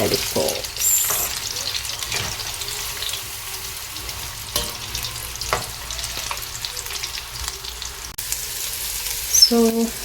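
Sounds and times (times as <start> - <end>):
chicken frying in hot oil: 0.0 - 10.0.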